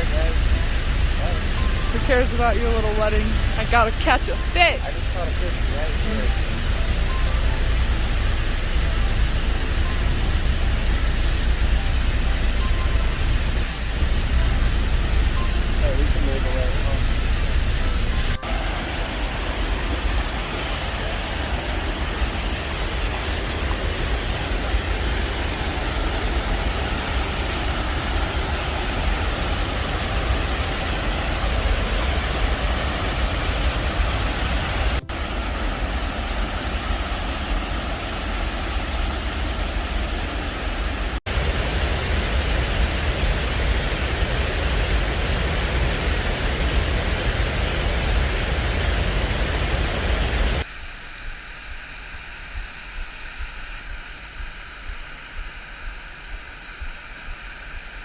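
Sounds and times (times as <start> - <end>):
waterfall rushing: 0.0 - 50.6.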